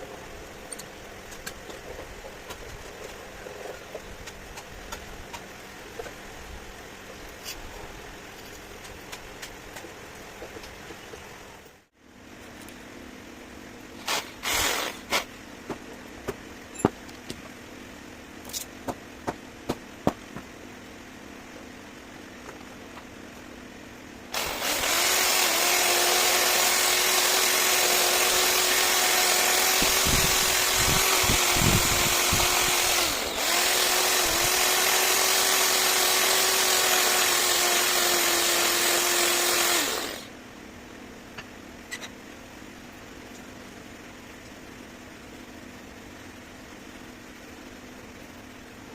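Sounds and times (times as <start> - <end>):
power tool whining: 14.0 - 15.3, 24.3 - 40.3.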